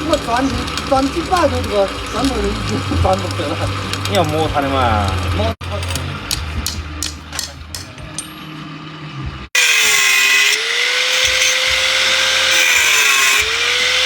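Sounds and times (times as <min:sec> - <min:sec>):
electric power tool running: 0:00.0 - 0:05.6, 0:09.6 - 0:14.0.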